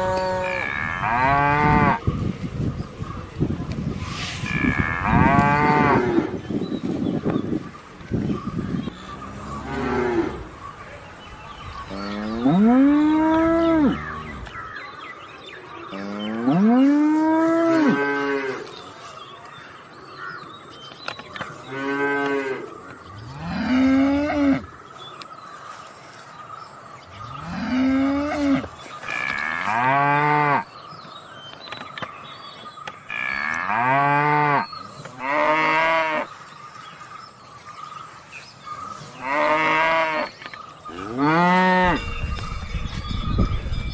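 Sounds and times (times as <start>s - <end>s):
cattle mooing: 0.0s - 2.0s, 4.4s - 6.3s.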